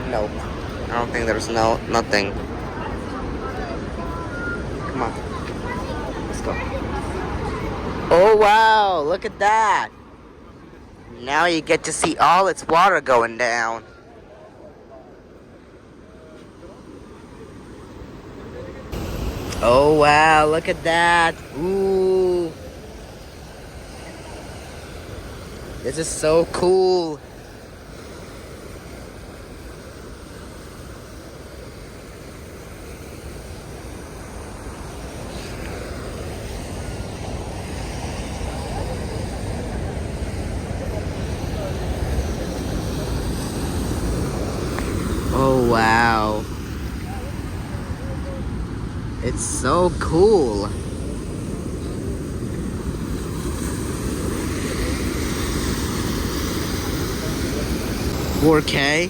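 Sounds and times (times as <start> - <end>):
waterfall roaring: 0.0 - 13.8, 16.7 - 59.0.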